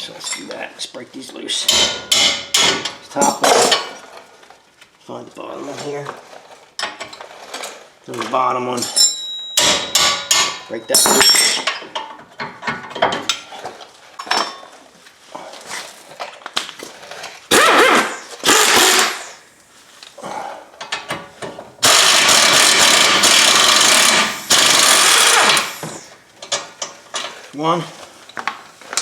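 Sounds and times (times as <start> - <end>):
tools clanking: 6.8 - 14.7, 20.8 - 27.5
power tool spinning bolts: 17.5 - 19.3, 21.8 - 26.0.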